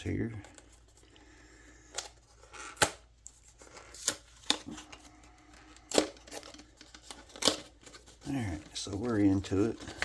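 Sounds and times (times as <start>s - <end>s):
packaging rustling: 0.4s - 10.0s
packaging snapping and clicking: 5.7s - 8.1s.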